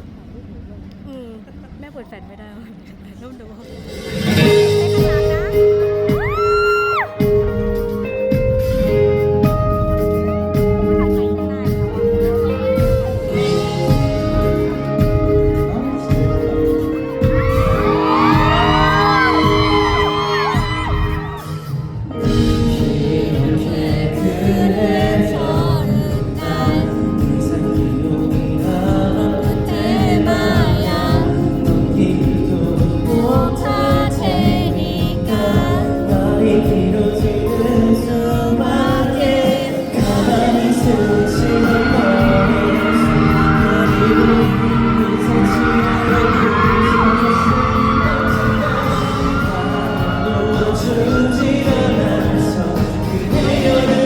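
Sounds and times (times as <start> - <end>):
backing track: 2.7 - 54.0
amplified live pop music: 3.6 - 54.0
man singing: 11.8 - 21.2, 22.2 - 54.0.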